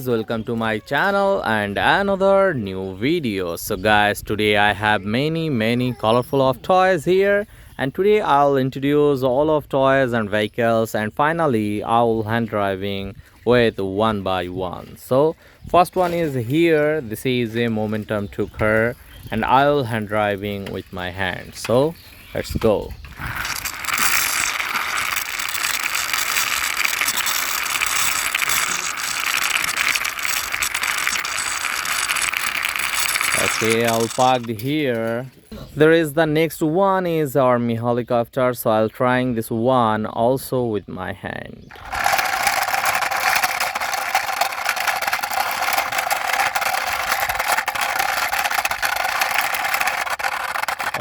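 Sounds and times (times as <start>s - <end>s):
toy truck gears whirring: 0.0s - 2.1s, 15.0s - 34.8s, 41.7s - 51.0s.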